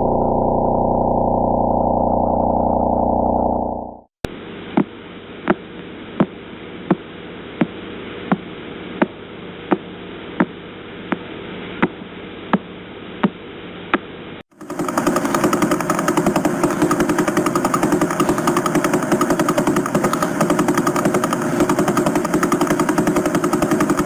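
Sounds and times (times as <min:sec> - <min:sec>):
sharp evenly spaced clicks: 0:14.5 - 0:24.0.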